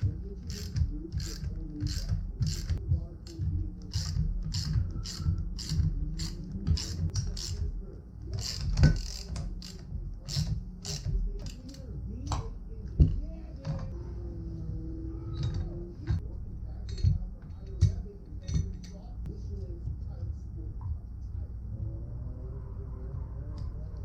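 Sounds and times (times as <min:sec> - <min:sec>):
ratchet wrench clicking: 0:00.0 - 0:02.8, 0:03.9 - 0:07.6, 0:08.4 - 0:11.8.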